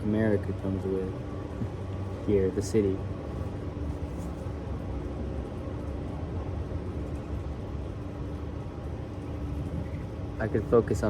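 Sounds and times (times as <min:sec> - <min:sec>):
distant city traffic rumble: 0:00.0 - 0:11.0
faint steady hum: 0:00.0 - 0:11.0.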